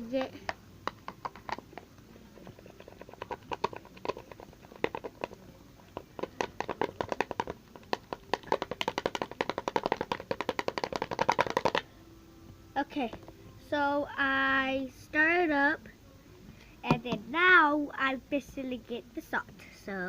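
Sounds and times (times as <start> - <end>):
utensil tapping against a bowl: 0.2 - 11.9.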